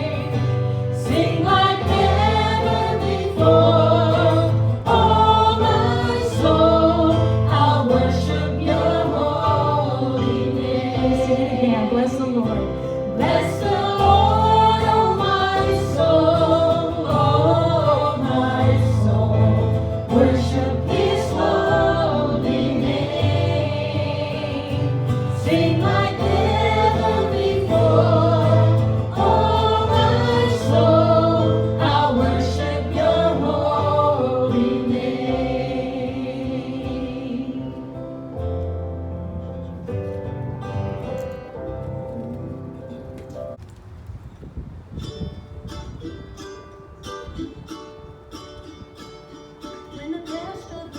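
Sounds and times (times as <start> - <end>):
group singing a worship song: 0.0 - 38.3
instrumental backing with bass: 0.0 - 43.6.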